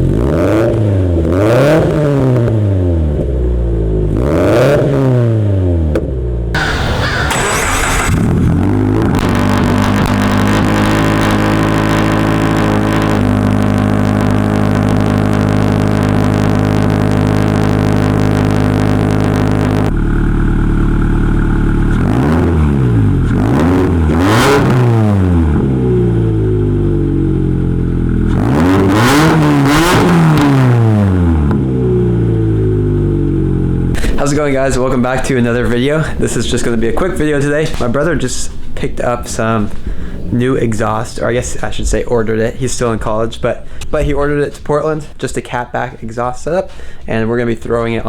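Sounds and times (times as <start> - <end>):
car engine idling and revving: 0.0 - 45.2.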